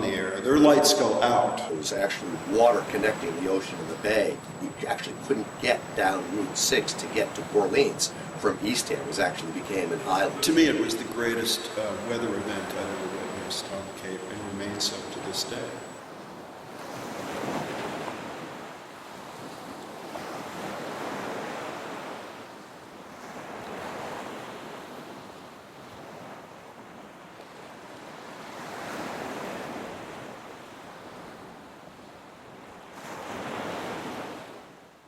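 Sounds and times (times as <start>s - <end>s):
ocean surf breaking: 0.0s - 16.1s.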